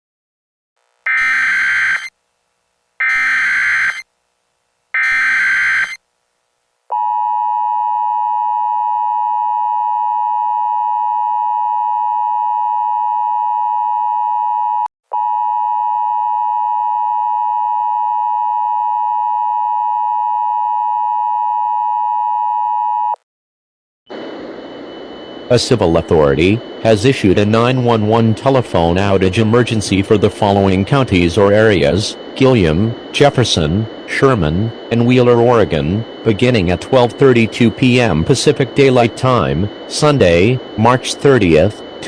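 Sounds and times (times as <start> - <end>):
digital data bursts: 1.1 - 2.1, 3.0 - 4.0, 5.0 - 6.0
two-tone attention signal: 1.1 - 2.1, 3.0 - 4.0, 5.0 - 6.0.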